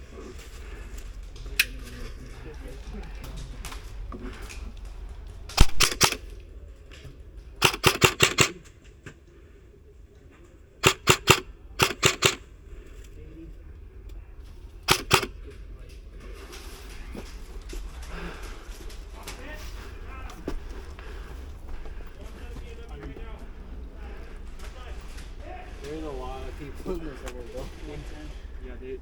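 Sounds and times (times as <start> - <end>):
airsoft rifle firing bursts: 5.5 - 6.3, 7.6 - 8.7, 10.8 - 12.5, 14.9 - 15.4.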